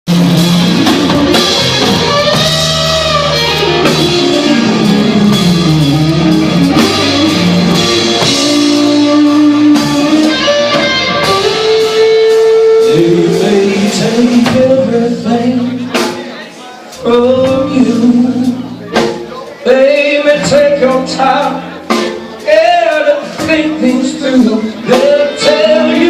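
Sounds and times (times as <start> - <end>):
electric guitar sliding notes: 0.1 - 16.1
drums: 0.1 - 26.0.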